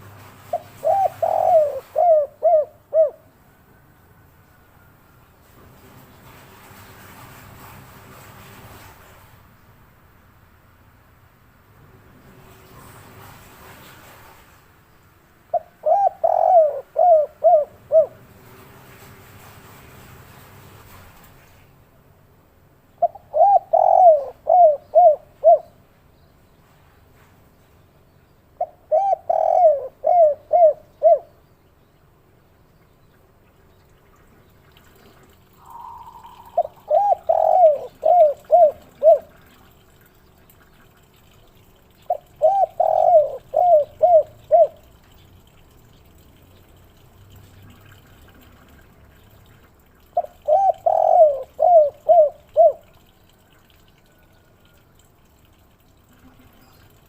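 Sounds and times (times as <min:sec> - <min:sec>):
dove cooing: 0:00.5 - 0:03.3, 0:15.5 - 0:18.2, 0:23.0 - 0:25.8, 0:28.6 - 0:31.3, 0:35.6 - 0:39.6, 0:42.1 - 0:45.0, 0:50.1 - 0:53.0.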